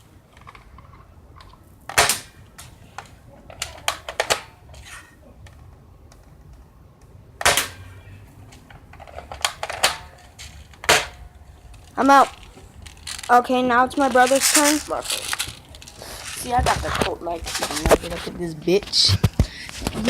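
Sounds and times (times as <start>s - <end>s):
airsoft gun shots: 1.9s - 2.4s, 7.4s - 8.0s, 10.8s - 11.2s.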